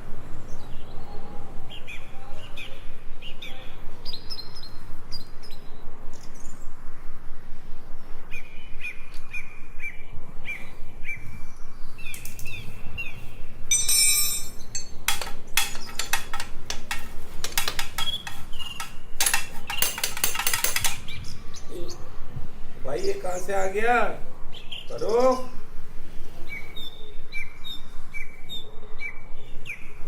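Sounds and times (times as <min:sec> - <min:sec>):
low steady hum: 0:00.0 - 0:30.0
sharp clicks and clinks: 0:13.7 - 0:21.1
small birds chirping: 0:17.6 - 0:20.0, 0:22.8 - 0:25.6.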